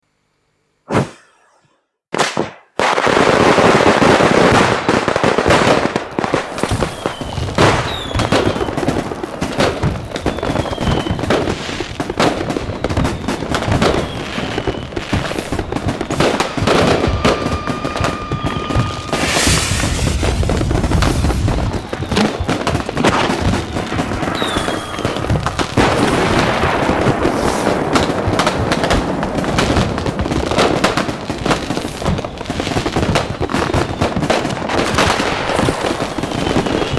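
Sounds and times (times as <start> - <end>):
rocket whistles: 0.9 - 2.7, 6.5 - 9.0, 10.2 - 11.6, 12.3 - 26.4, 33.5 - 36.9
fireworks bangs and crackling: 0.9 - 36.9
loud hissing burst: 16.1 - 17.2, 19.2 - 25.4.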